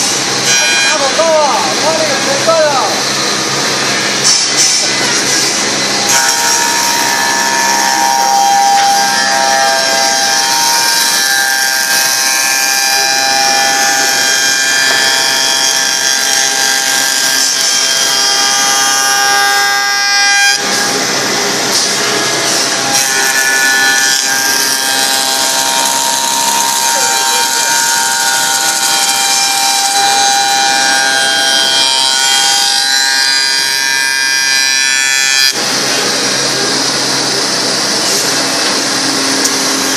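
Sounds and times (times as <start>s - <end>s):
wood shaper cutter whining: 0.0s - 39.9s.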